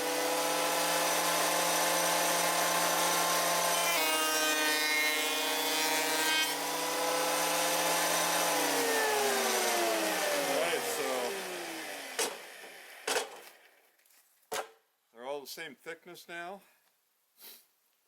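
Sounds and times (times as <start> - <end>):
power planer running: 0.0 - 13.5
sharp knocks: 12.2 - 12.4, 13.0 - 13.6, 14.5 - 14.8.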